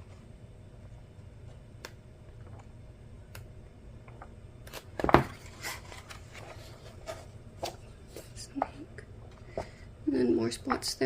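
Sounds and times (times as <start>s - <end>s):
page rustle and flap: 4.7s - 7.8s.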